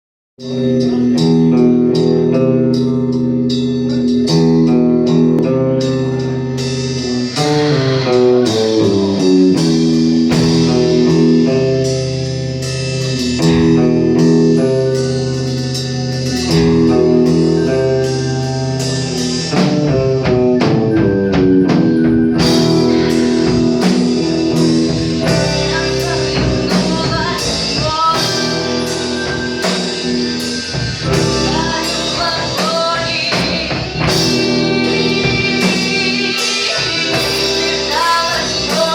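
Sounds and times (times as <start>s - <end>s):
band with guitar and drums: 0.4s - 38.9s
person singing: 22.4s - 38.9s.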